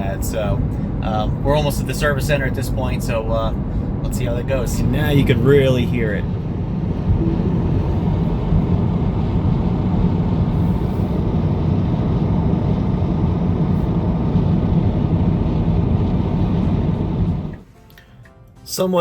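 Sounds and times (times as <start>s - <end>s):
car cabin road and wind noise: 0.0s - 17.6s
window wind noise: 8.1s - 17.6s.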